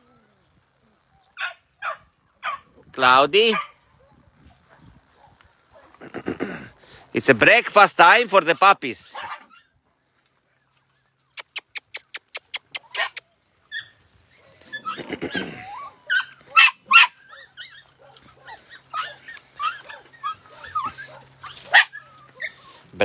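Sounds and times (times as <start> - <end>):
puppies whining and yipping: 11.0 - 23.0
sharp clicks: 11.4 - 13.2.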